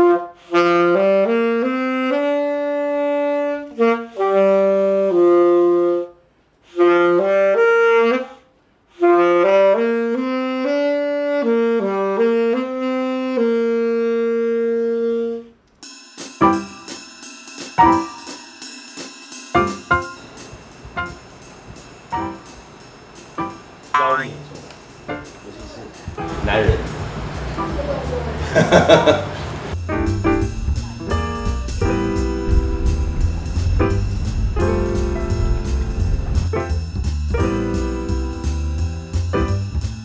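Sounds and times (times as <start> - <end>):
saxophone playing slow melody: 0.0 - 15.6.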